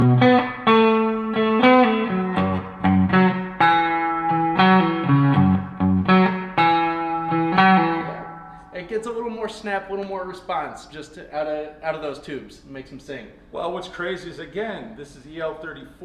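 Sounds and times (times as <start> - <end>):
clean electric guitar: 0.0 - 8.8.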